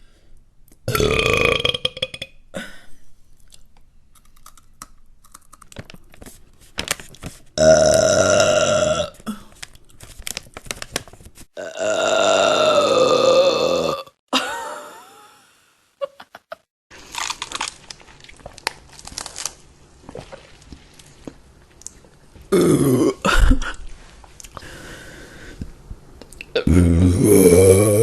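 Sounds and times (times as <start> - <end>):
person burping: 0.9 - 2.8, 7.6 - 9.2, 11.6 - 14.2, 22.5 - 23.8, 26.5 - 28.0.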